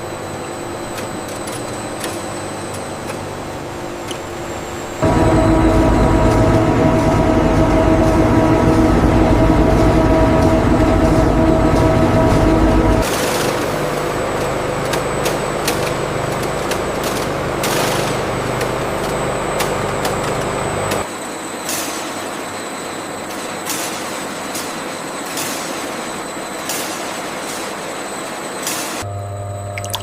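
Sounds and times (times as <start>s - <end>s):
industrial machinery running: 0.0s - 30.0s
heavy low rumble: 4.4s - 13.1s.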